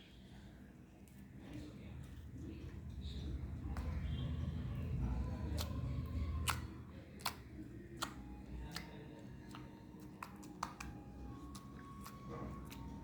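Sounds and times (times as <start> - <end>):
low handling rumble: 1.4 - 8.5.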